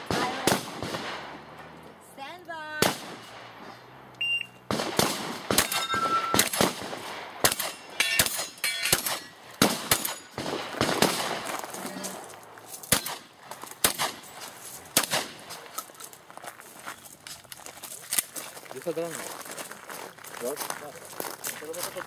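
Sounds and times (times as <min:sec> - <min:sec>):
shotgun shots: 0:00.0 - 0:01.6, 0:02.8 - 0:03.6, 0:04.7 - 0:11.8, 0:12.9 - 0:14.3, 0:14.9 - 0:15.5
electronic shot timer beep: 0:04.2 - 0:04.6, 0:05.7 - 0:06.5
metallic ringing of steel targets: 0:05.6 - 0:06.6, 0:07.5 - 0:10.4.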